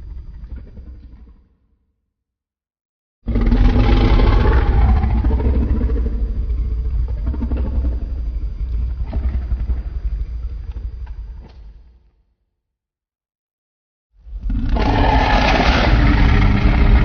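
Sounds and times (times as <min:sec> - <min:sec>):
monster roar and deep rumble: 0:03.3 - 0:11.0, 0:14.3 - 0:17.0.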